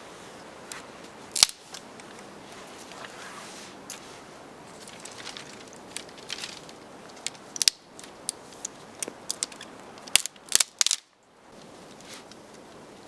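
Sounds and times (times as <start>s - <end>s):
dry branches cracking: 1.3s - 2.3s, 4.6s - 11.7s.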